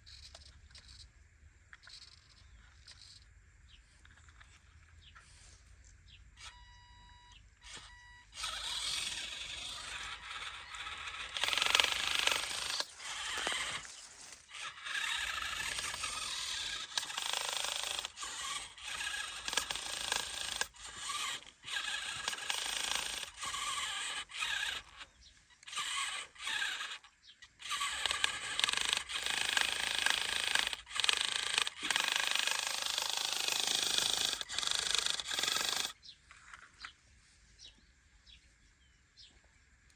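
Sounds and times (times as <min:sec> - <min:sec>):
rc toy motors and gears whining: 0:00.0 - 0:37.0
short electronic beeps: 0:06.5 - 0:08.4.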